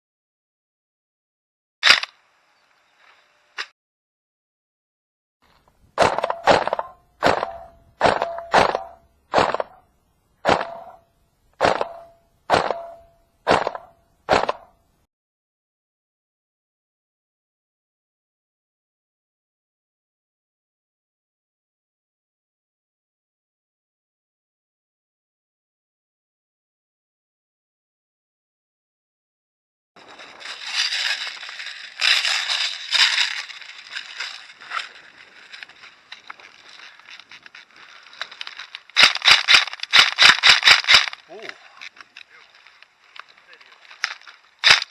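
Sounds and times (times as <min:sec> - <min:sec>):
airsoft gun shots: 0:06.0 - 0:09.8, 0:10.4 - 0:11.0, 0:11.6 - 0:14.7
loud rustling and crunching: 0:30.0 - 0:44.9.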